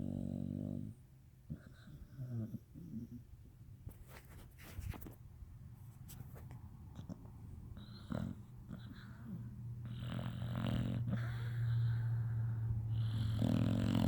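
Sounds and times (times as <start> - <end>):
dog snoring: 0.0 - 3.2, 7.8 - 14.0.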